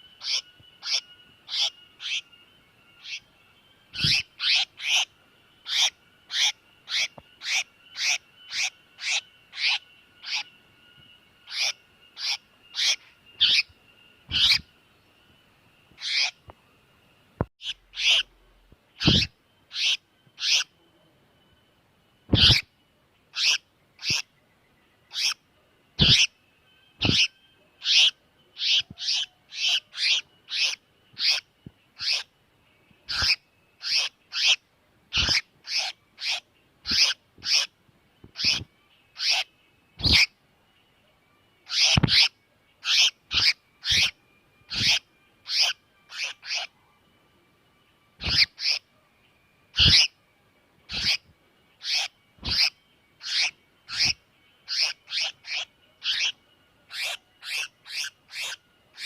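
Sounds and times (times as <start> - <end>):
bird distress calls: 0.0 - 2.4, 3.0 - 3.3, 3.9 - 10.6, 11.4 - 14.8, 16.0 - 16.4, 17.6 - 20.8, 22.3 - 22.7, 23.3 - 24.3, 25.1 - 25.4, 26.0 - 26.4, 27.0 - 32.3, 33.1 - 40.4, 41.6 - 46.8, 48.2 - 48.9, 49.7 - 50.2, 50.9 - 51.2, 51.8 - 59.0
faint steady high tone: 0.0 - 59.0.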